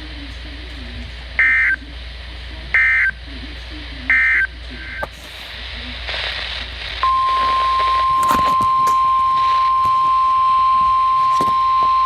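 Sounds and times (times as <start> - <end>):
radio hiss with crackles: 0.0 - 12.0
steady alarm tone: 7.0 - 12.0.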